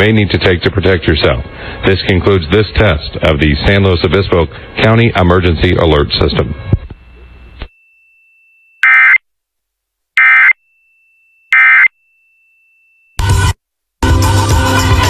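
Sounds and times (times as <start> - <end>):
radio programme audio: 0.0 - 7.4
faint steady high tone: 6.5 - 8.9, 10.5 - 13.2.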